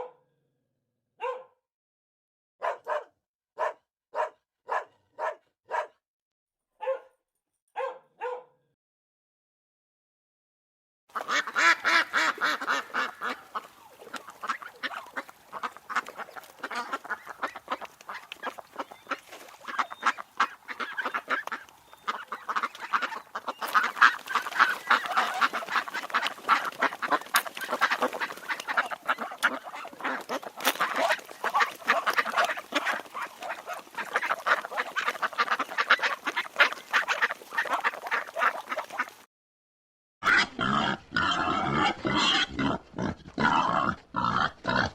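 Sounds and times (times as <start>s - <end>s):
ducks quacking: 11.1s - 39.3s, 40.3s - 44.9s.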